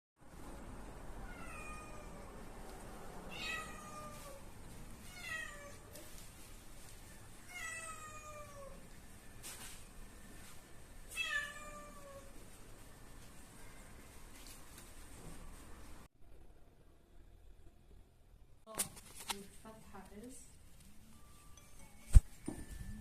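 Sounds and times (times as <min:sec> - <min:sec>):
cat meowing: 0:01.2 - 0:02.3, 0:03.3 - 0:04.4, 0:11.1 - 0:12.3.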